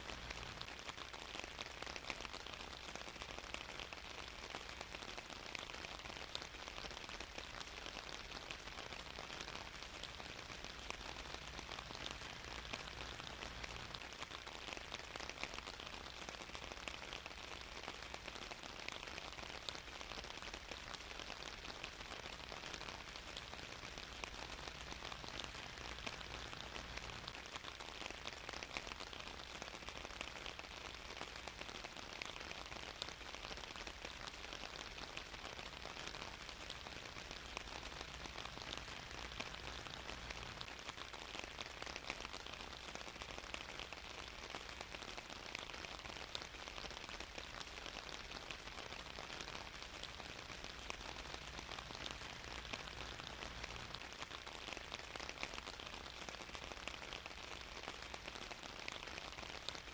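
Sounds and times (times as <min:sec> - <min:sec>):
rain pattering: 0:00.0 - 0:59.9.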